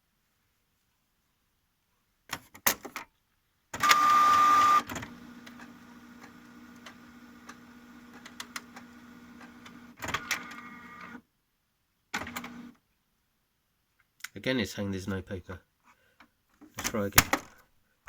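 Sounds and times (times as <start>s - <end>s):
printer mechanism clicking: 3.8s - 11.2s, 12.2s - 12.7s
printer whirring with whine: 3.8s - 11.2s, 12.2s - 12.7s.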